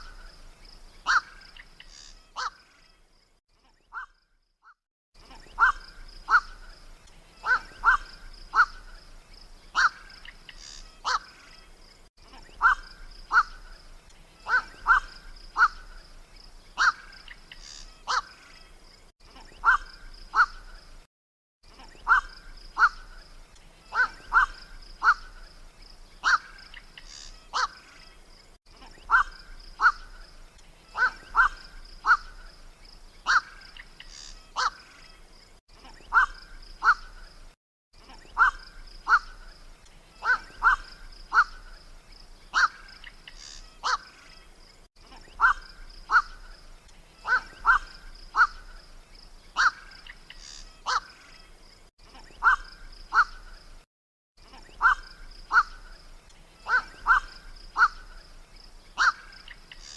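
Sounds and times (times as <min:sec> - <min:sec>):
heron croaking: 0:01.0 - 0:02.6, 0:05.4 - 0:06.7, 0:07.4 - 0:09.0, 0:09.7 - 0:11.4, 0:12.5 - 0:13.7, 0:14.4 - 0:16.0, 0:16.8 - 0:18.4, 0:19.4 - 0:20.7, 0:21.8 - 0:23.2, 0:23.9 - 0:25.5, 0:26.2 - 0:27.8, 0:28.9 - 0:30.2, 0:30.9 - 0:32.5, 0:33.2 - 0:34.8, 0:36.0 - 0:37.2, 0:38.2 - 0:39.5, 0:40.2 - 0:41.8, 0:42.5 - 0:44.2, 0:45.1 - 0:48.8, 0:49.6 - 0:51.2, 0:52.2 - 0:53.5, 0:54.5 - 0:56.0, 0:56.6 - 0:58.2, 0:59.0 - 0:59.9.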